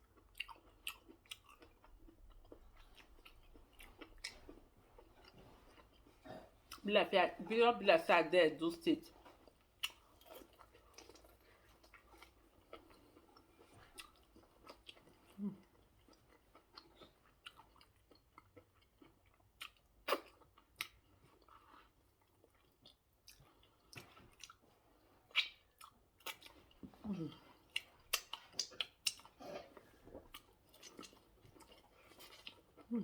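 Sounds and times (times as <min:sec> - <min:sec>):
person chewing food: 0:00.0 - 0:06.8, 0:09.1 - 0:33.0.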